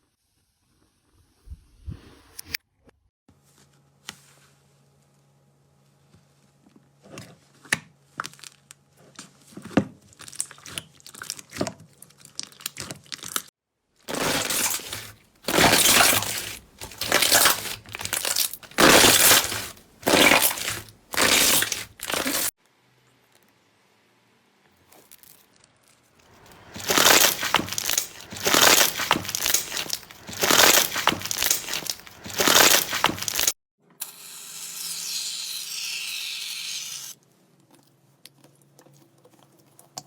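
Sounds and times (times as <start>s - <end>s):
crunchy slime being squeezed: 14.1s - 22.5s, 26.5s - 33.5s.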